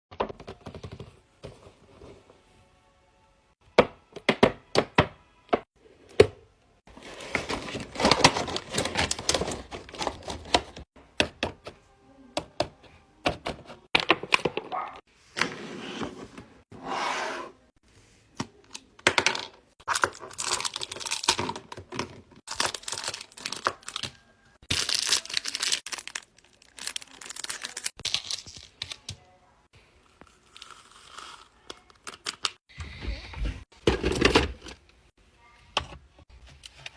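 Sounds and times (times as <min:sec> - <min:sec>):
crinkling and tearing noise: 0:22.5 - 0:29.1.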